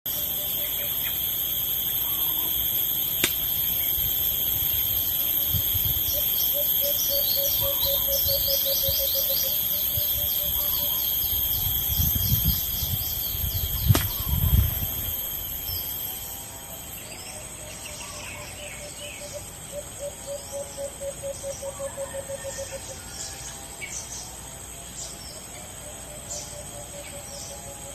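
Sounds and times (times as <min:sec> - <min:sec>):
insects droning: 0:00.1 - 0:27.9
sharp click: 0:03.2 - 0:03.4
dove calling: 0:05.8 - 0:11.2.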